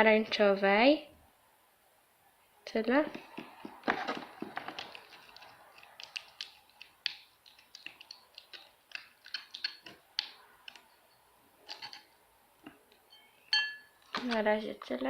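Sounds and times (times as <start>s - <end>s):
slime being stirred: 3.1s - 11.0s.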